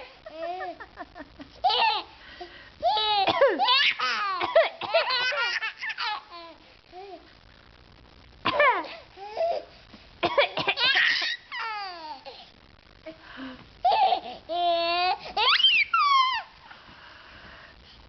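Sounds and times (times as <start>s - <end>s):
baby laughing: 0.0s - 2.1s, 2.8s - 6.6s, 10.8s - 12.3s, 13.9s - 16.5s.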